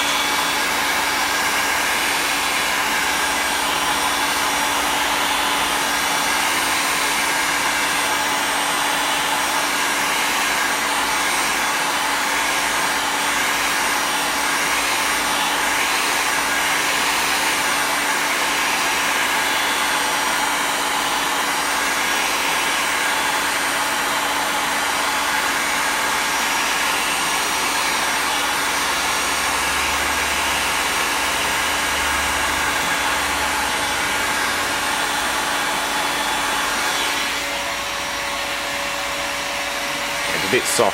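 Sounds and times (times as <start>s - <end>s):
heat gun running: 0.0s - 40.9s.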